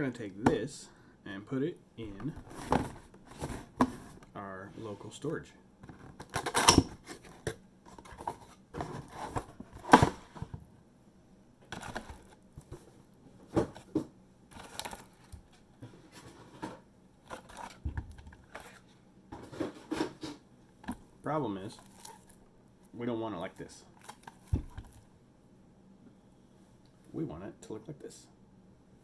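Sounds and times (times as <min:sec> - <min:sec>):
handling rustles: 0:02.1 - 0:05.1, 0:05.8 - 0:10.7, 0:11.7 - 0:21.1
objects scraping: 0:02.2 - 0:05.1.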